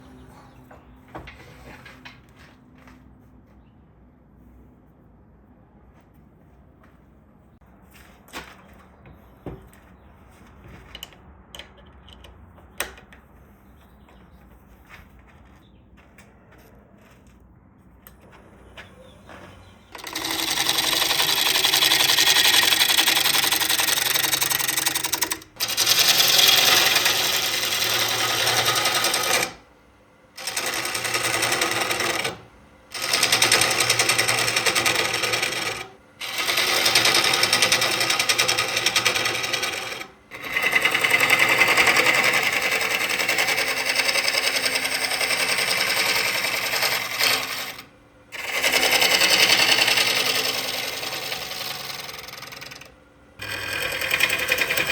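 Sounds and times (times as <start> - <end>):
power tool cutting wood: 18.8 - 29.6, 30.4 - 54.9.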